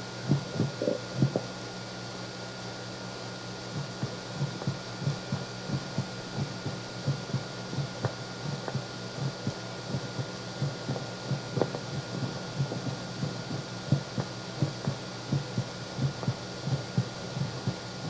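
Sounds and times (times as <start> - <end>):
tape hiss: 0.0 - 18.0.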